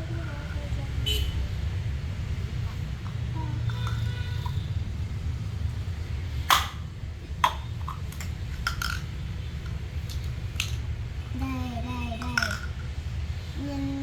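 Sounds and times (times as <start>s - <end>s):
steady low hum: 0.0s - 14.0s
toy pieces clicking on a table: 7.4s - 10.8s, 12.1s - 12.9s.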